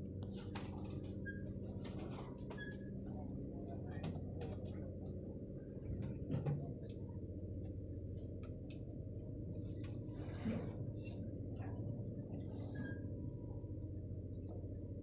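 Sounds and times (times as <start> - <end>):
boat engine humming: 0.0 - 15.0.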